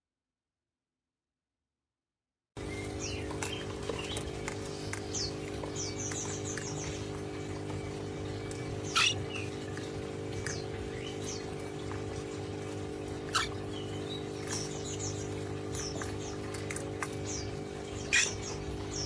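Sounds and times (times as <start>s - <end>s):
low electrical hum: 2.6s - 19.0s
parrot squeaky chirps: 8.9s - 9.2s, 13.3s - 13.6s, 18.0s - 18.5s.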